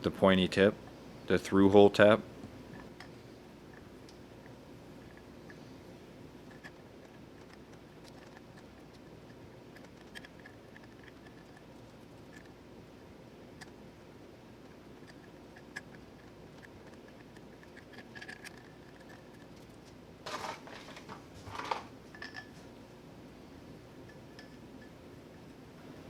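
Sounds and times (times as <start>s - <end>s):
scraping and clatter: 20.3s - 22.5s.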